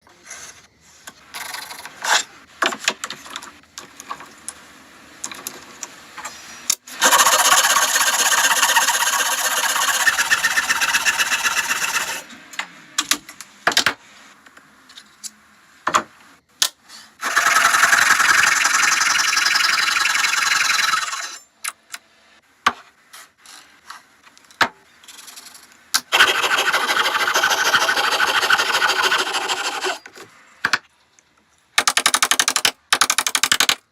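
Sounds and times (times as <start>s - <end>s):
electric jigsaw cutting wood: 6.9s - 12.3s, 17.2s - 21.4s, 26.1s - 30.0s.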